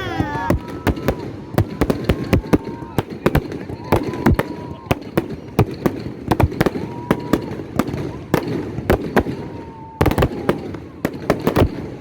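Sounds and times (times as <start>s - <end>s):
firework whistling: 0.0s - 8.5s
fireworks bangs and cracks: 0.0s - 12.0s.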